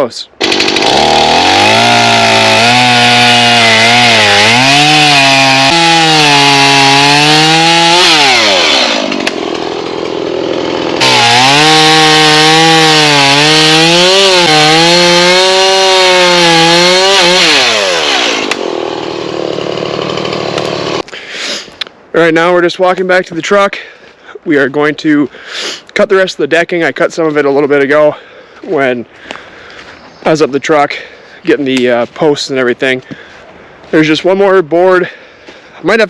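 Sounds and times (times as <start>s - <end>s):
chainsaw idling: 0.4s - 21.1s
chainsaw cutting through wood: 0.4s - 21.7s.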